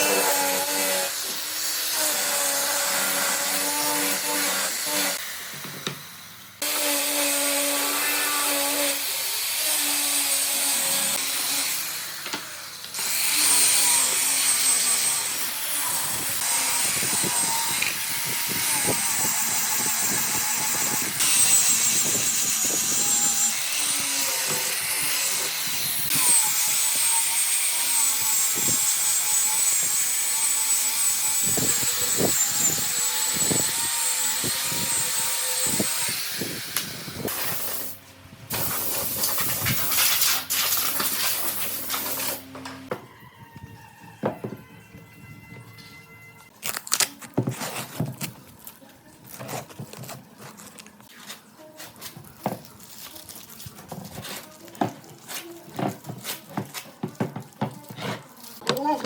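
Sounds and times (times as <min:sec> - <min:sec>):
power tools machining wood: 0:06.6 - 0:36.6.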